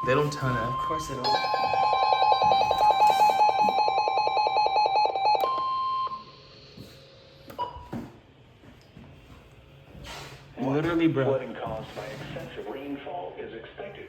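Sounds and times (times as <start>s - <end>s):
rapid pulsing beeps: 0.0s - 6.6s
steady high beep: 0.0s - 7.9s.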